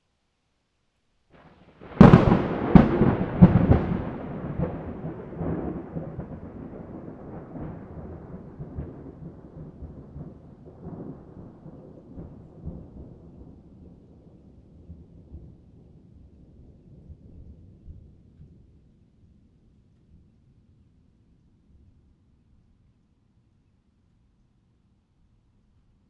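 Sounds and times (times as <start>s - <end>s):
thunder rumble: 1.7s - 18.3s
thunder cracks: 1.8s - 13.6s.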